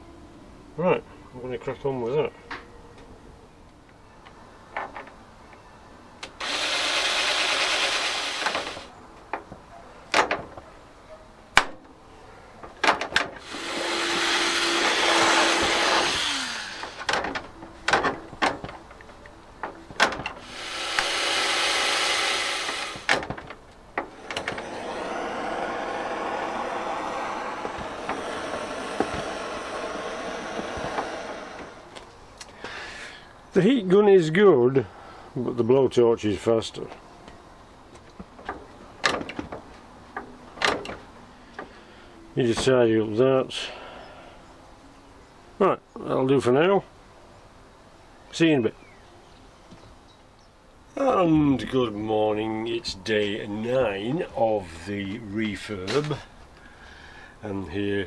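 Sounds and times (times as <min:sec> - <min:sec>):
heat tool blowing hot air: 0:13.4 - 0:17.1, 0:20.4 - 0:23.1, 0:24.2 - 0:32.0.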